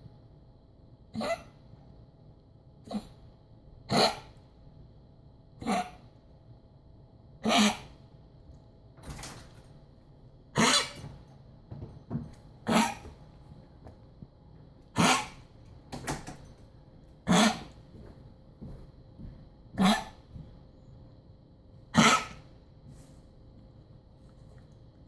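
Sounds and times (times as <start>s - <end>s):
dog coughing: 1.2s - 1.5s, 3.9s - 4.3s, 5.6s - 6.0s, 7.4s - 7.9s, 10.6s - 11.0s, 12.6s - 13.2s, 15.0s - 15.5s, 17.2s - 17.7s, 19.8s - 20.2s, 21.9s - 22.4s.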